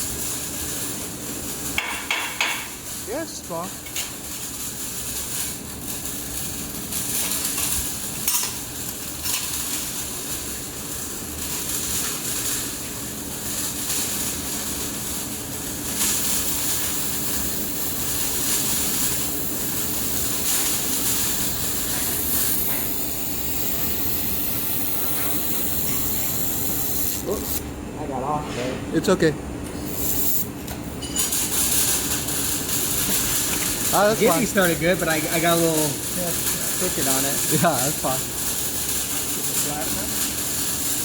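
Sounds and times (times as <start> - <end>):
laser welder crackling sizzle: 0.0 - 27.8, 29.0 - 41.0
steady low hum: 14.5 - 41.0.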